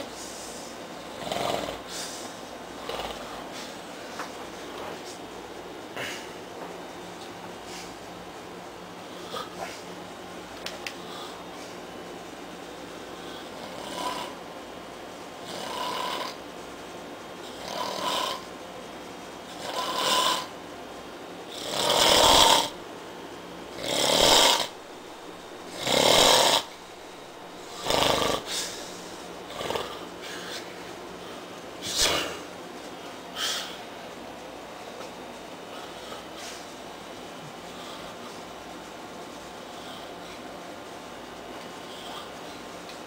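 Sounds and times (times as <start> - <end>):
man snoring loudly: 1.1 - 1.9, 13.2 - 14.4, 15.4 - 16.4, 17.5 - 18.5, 19.6 - 20.5, 21.5 - 22.8, 23.8 - 24.8, 25.7 - 26.7, 27.6 - 28.7, 29.5 - 30.1.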